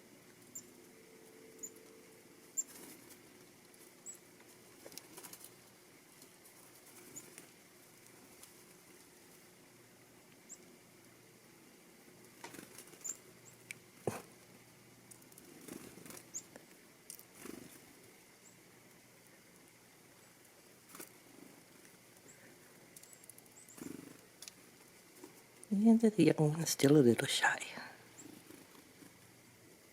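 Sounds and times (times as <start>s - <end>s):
chickadees chirping: 1.5s - 3.1s, 4.0s - 4.2s, 12.6s - 13.7s, 15.6s - 16.6s, 22.2s - 24.3s, 28.1s - 28.7s.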